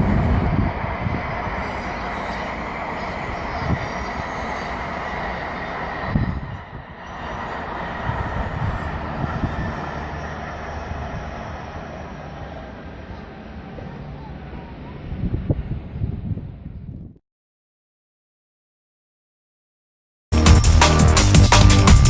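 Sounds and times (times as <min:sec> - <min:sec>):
train rushing rail noise: 0:00.0 - 0:16.7, 0:20.4 - 0:22.0.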